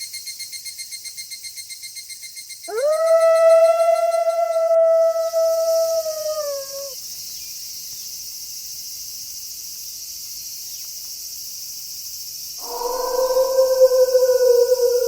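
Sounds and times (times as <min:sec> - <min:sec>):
crickets chirring: 0:00.3 - 0:15.0
wolf howling: 0:02.7 - 0:07.0, 0:12.6 - 0:15.0.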